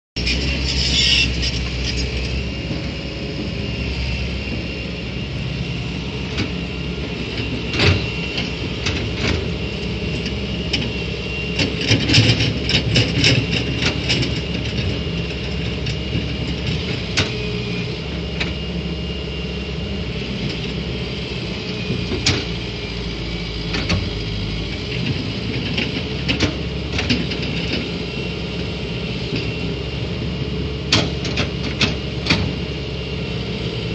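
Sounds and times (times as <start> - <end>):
excavator engine running: 0.2 - 33.9.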